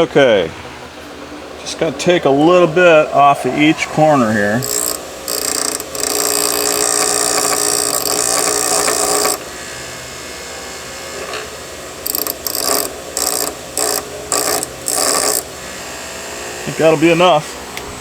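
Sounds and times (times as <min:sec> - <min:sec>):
grinder grinding steel nut: 0:03.6 - 0:09.6, 0:11.1 - 0:15.8.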